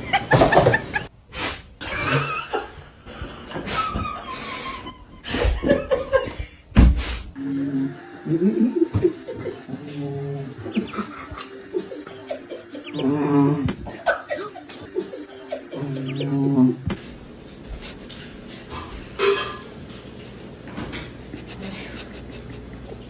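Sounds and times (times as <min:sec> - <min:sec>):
people laughing: 0:00.0 - 0:01.1, 0:01.8 - 0:06.4, 0:08.2 - 0:16.6, 0:21.3 - 0:23.0
people speaking: 0:14.3 - 0:16.9.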